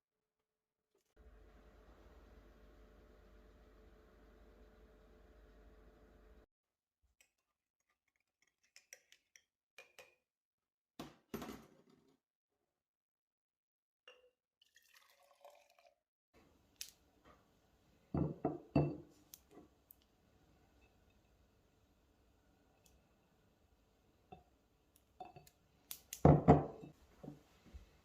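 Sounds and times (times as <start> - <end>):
glass and dishes clinking: 18.2 - 19.1.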